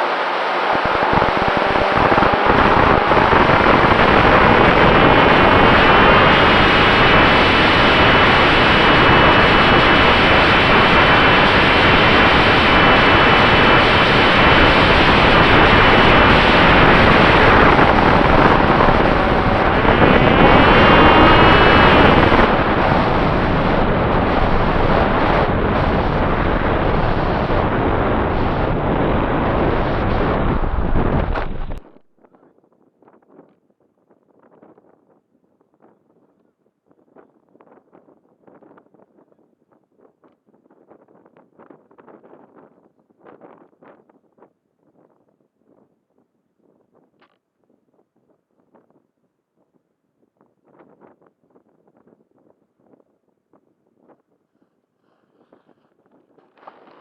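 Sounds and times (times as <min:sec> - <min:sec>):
electric motor and propeller whine: 0:00.0 - 0:31.8
wind rushing over microphone: 0:00.0 - 0:46.0.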